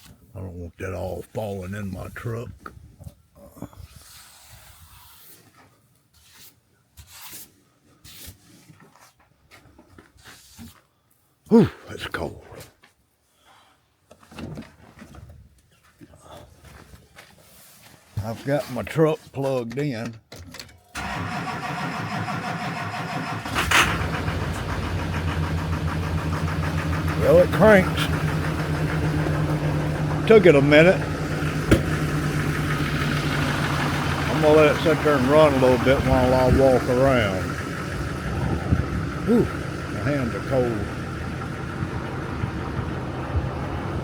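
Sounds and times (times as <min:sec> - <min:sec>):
truck engine cranking: 0:20.9 - 0:44.0
truck engine idling: 0:21.0 - 0:44.0.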